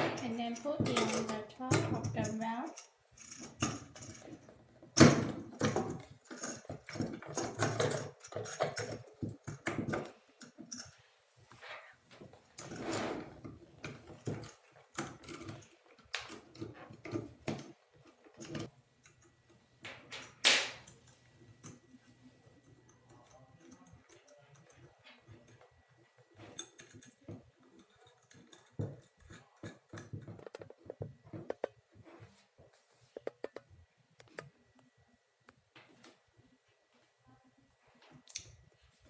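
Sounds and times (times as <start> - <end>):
metal and plastic parts rattling: 0.0 - 11.0, 12.5 - 21.9, 22.6 - 31.8.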